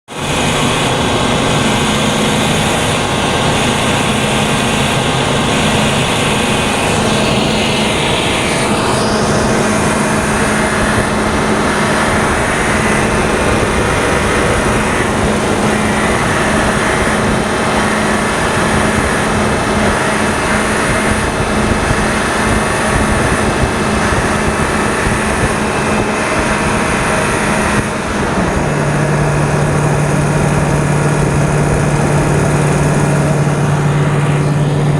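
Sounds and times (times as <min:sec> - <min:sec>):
engine running with buzzing hum: 0:00.1 - 0:34.9.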